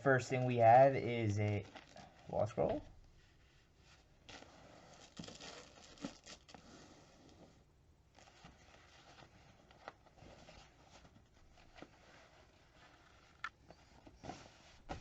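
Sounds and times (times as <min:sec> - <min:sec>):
packaging rustling and crinkling: 0:01.4 - 0:03.1, 0:04.2 - 0:07.1.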